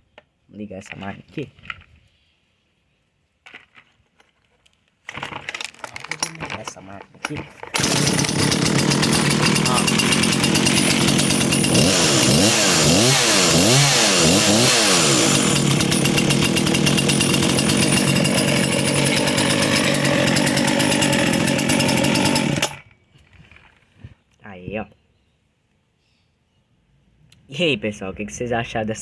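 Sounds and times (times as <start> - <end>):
chainsaw revving: 7.7 - 22.8.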